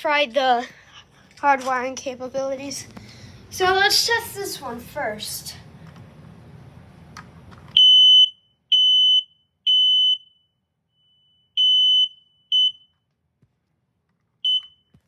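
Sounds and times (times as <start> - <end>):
smoke alarm beeping: 7.7 - 13.0, 14.4 - 15.0.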